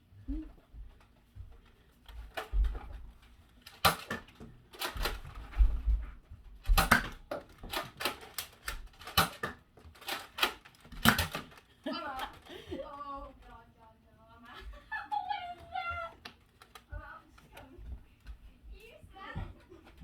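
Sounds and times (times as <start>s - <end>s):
toy blaster plastic clicks: 3.6s - 5.3s, 6.7s - 12.5s.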